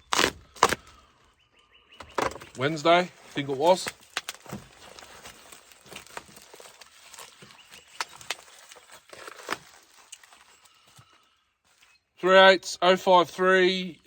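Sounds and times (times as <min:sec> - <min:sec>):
packaging rustling and crinkling: 0:02.1 - 0:11.9.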